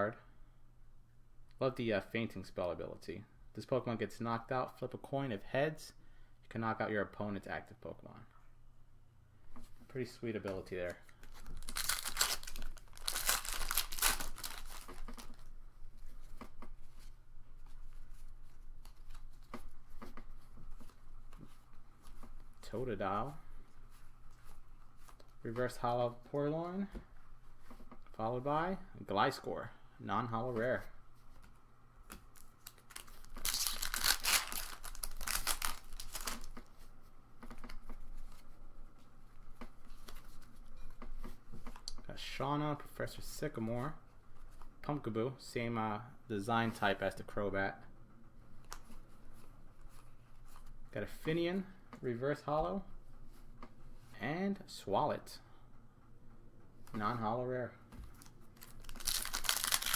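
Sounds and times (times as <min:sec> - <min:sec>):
cards clicking and rustling: 0:10.8 - 0:15.5, 0:32.0 - 0:36.7, 0:58.0 - 0:59.9
wrapper tearing and crinkling: 0:11.2 - 0:15.5, 0:32.3 - 0:36.6, 0:58.1 - 0:59.9.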